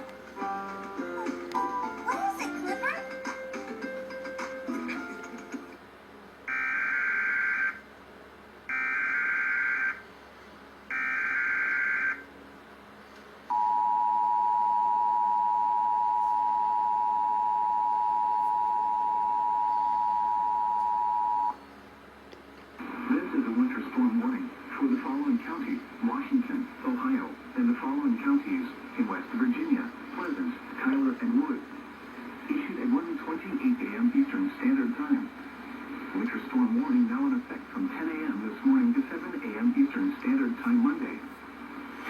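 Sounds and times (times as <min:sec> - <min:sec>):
two-tone attention signal: 0:13.5 - 0:21.6.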